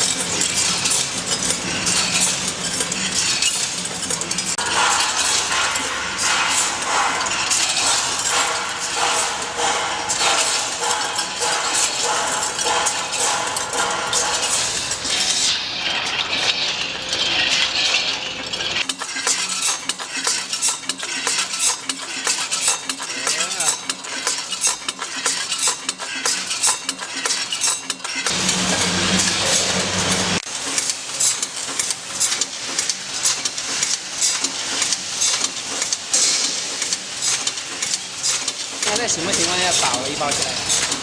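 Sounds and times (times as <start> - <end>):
biscuits rattling through machine: 0.0 - 41.0
heavier machine hum: 4.1 - 18.8, 28.3 - 30.4
machine hum: 4.2 - 18.8, 28.3 - 30.4.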